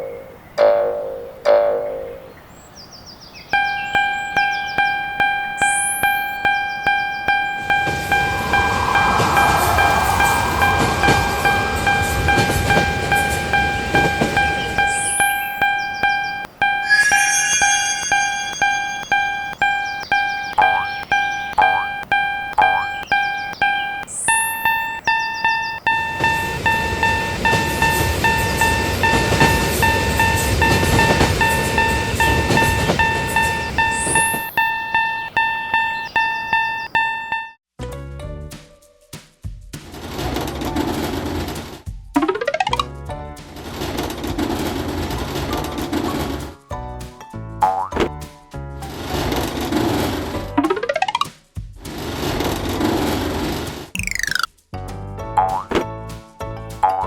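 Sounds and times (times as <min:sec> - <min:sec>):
train passing with clacking wheels: 0:03.6 - 0:20.2, 0:22.8 - 0:37.4, 0:39.8 - 0:42.2, 0:43.4 - 0:46.7, 0:48.8 - 0:50.6, 0:51.5 - 0:53.9
level crossing bell ringing: 0:03.6 - 0:37.6.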